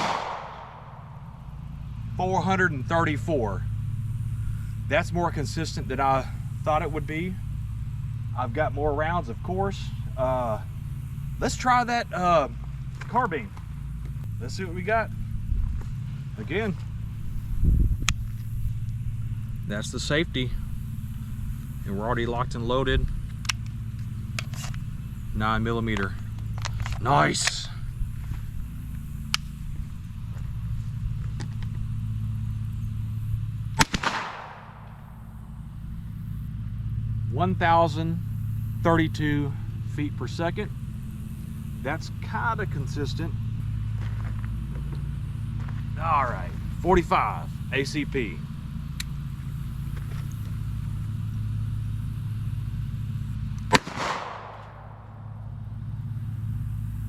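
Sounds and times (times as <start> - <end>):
gunshot with echo: 0.0 - 1.2, 33.8 - 35.0, 53.7 - 55.2
steady low hum: 0.0 - 57.0.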